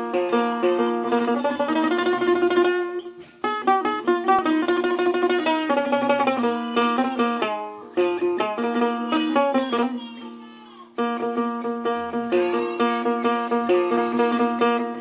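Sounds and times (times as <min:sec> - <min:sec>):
plucked lute melody: 0:00.0 - 0:15.0.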